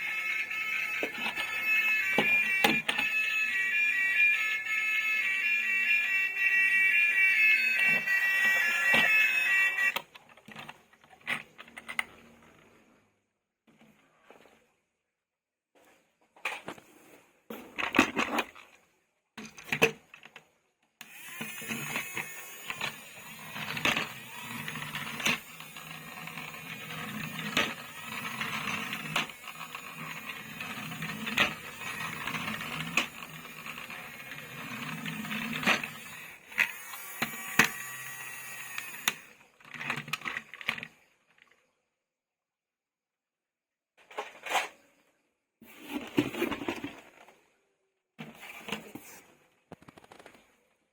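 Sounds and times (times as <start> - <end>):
plastic toys clicking and rattling: 21.4 - 40.9, 49.7 - 50.4.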